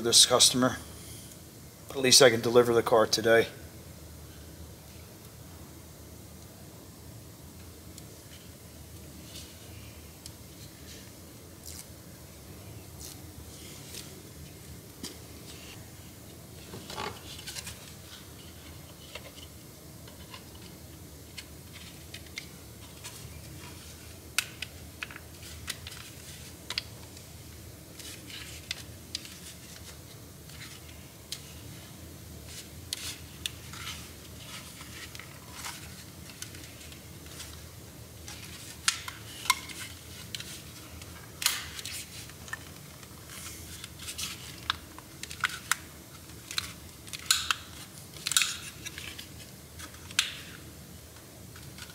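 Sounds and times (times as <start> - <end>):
low steady hum: 0.0 - 51.9.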